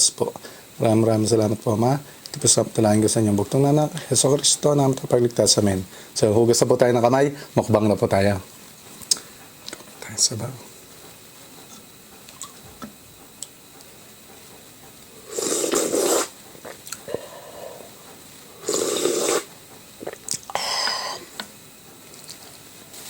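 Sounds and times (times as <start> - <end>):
noisy eating: 11.0 - 12.8, 15.1 - 22.7.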